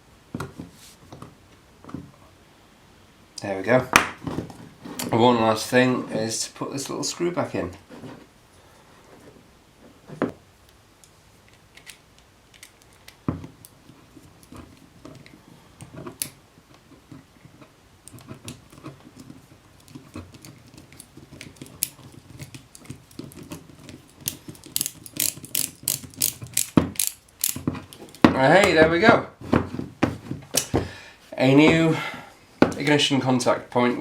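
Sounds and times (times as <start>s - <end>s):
screwdriver metallic clicks and scrapes: 19.8s - 28.2s.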